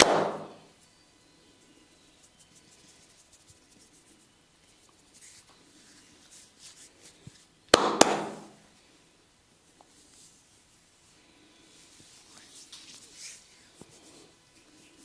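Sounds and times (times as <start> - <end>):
sharp cracks: 0.0 - 0.6, 7.7 - 8.6
faint rubbing: 1.6 - 7.5, 9.9 - 15.0.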